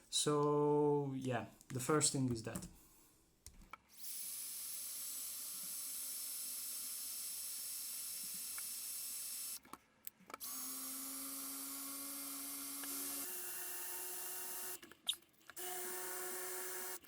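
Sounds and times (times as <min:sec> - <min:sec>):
power drill whining: 0:10.4 - 0:14.8, 0:15.6 - 0:17.0.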